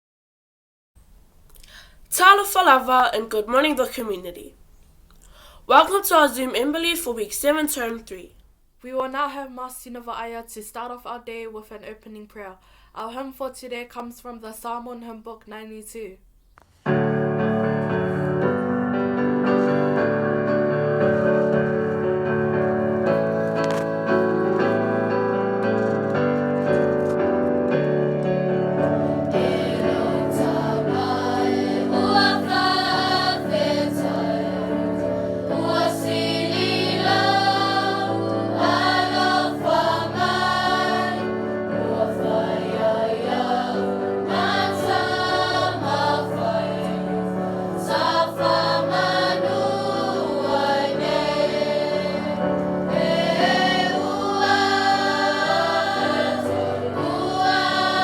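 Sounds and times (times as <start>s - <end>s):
keyboard accompaniment: 16.8s - 58.0s
choir singing a hymn: 17.1s - 26.0s, 27.6s - 58.0s.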